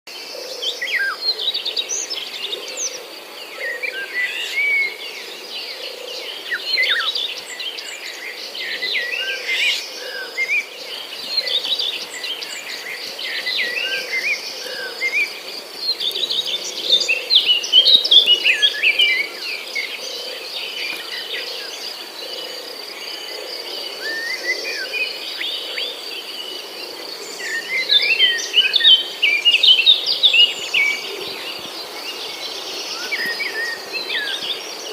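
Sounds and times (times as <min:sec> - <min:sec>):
small birds chirping: 0:00.5 - 0:34.9.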